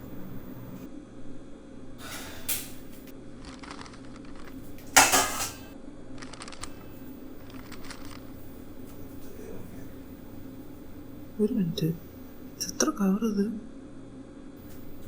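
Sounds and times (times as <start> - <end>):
rustling and clattering handling: 3.4 - 5.7.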